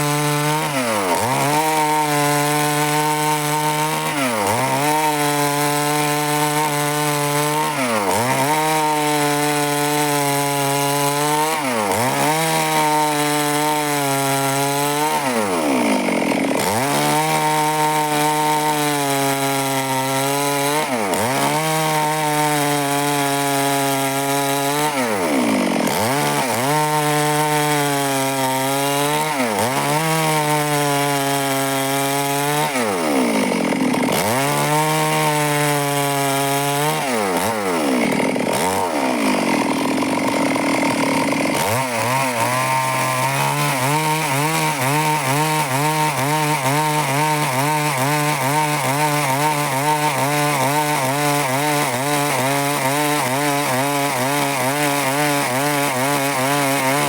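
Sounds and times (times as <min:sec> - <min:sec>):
chainsaw cutting wood: 0:00.0 - 0:57.0.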